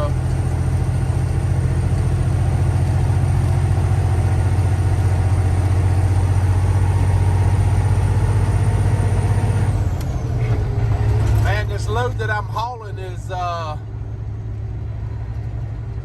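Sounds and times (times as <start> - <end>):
diesel truck engine droning: 0.0 - 16.0.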